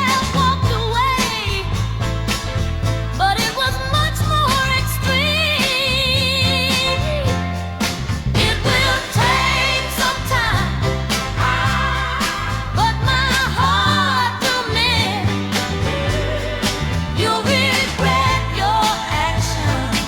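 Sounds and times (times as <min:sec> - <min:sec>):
pop song with vocals: 0:00.0 - 0:20.0.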